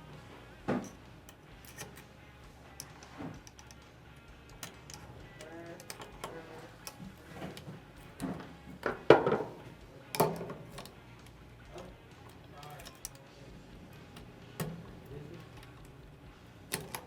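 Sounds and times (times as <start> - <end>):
metal tools clicking and tapping: 0.7 - 16.1, 16.7 - 17.0.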